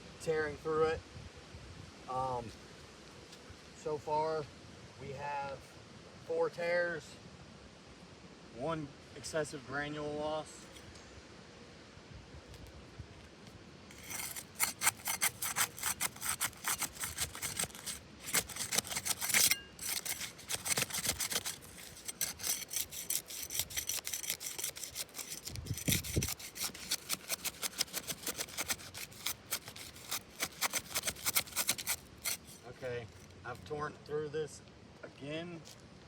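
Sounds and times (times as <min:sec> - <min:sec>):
shingle scraping strokes: 0:13.9 - 0:33.8.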